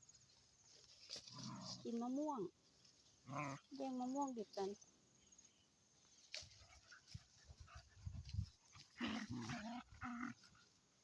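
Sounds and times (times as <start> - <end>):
dogs growling: 3.2 - 3.8, 6.7 - 10.7.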